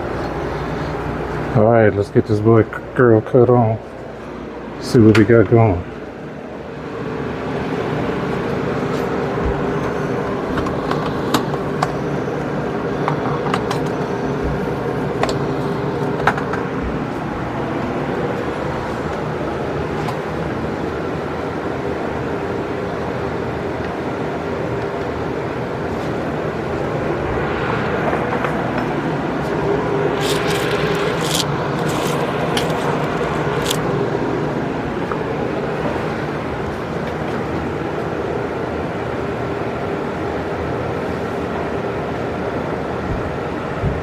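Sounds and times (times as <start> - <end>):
mechanical hum with low tones: 0.0 - 44.0.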